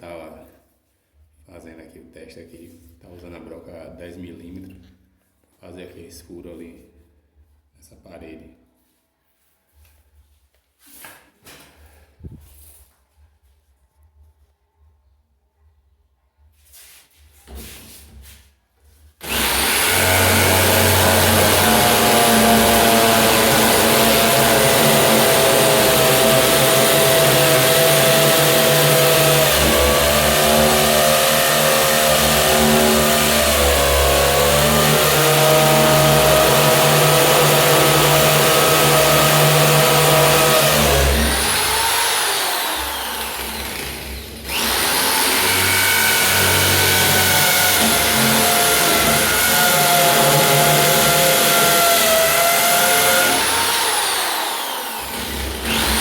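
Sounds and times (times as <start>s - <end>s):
electric drill boring into masonry: 19.2s - 56.0s.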